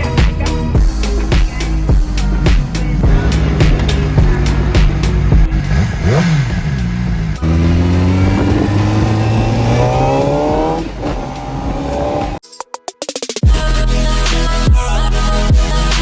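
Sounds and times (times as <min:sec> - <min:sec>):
motorcycle engine revving: 0:01.5 - 0:12.4.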